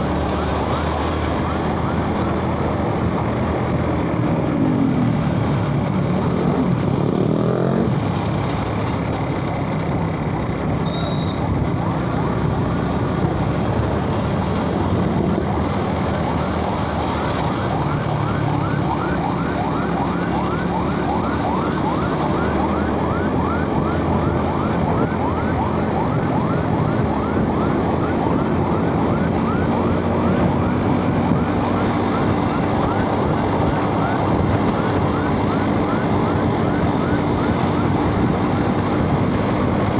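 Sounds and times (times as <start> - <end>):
traffic noise: 0.0 - 39.9
motorbike engine revving: 6.3 - 8.0
short high beep: 10.9 - 11.4.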